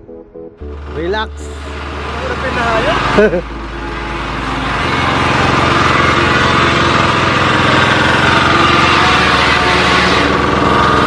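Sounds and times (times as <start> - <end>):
small motorcycle engine running: 0.6 - 11.0.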